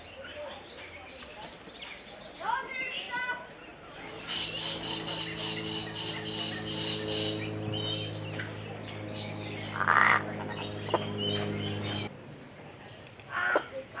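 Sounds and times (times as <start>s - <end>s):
birds calling and chirping: 0.6s - 12.1s
steady low hum: 3.8s - 12.2s.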